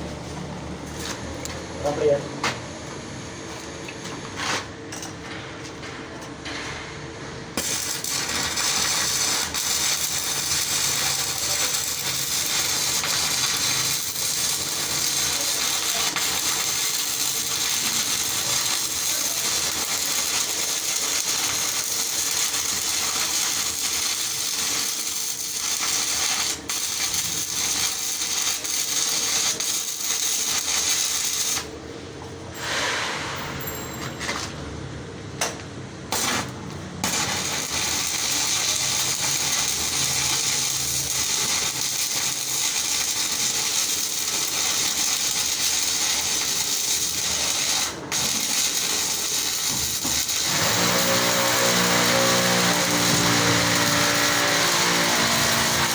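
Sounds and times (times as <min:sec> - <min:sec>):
welding arc crackling: 0:07.6 - 0:31.8, 0:36.1 - 0:55.9.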